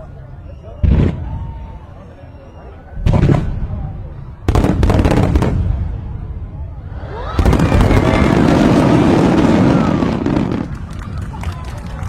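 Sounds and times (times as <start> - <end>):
fireworks bangs: 3.0 - 11.4
fireworks crackling: 7.3 - 12.0.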